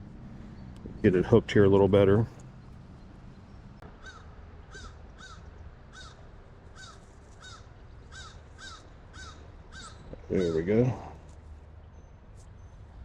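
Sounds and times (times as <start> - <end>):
bird calling: 0.0 - 11.4.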